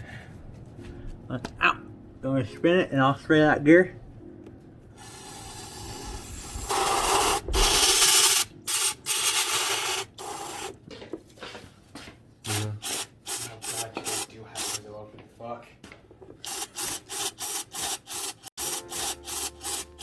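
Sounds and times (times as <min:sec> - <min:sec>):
aerosol can spraying: 0:05.0 - 0:10.8, 0:12.5 - 0:14.8, 0:16.4 - 0:20.0.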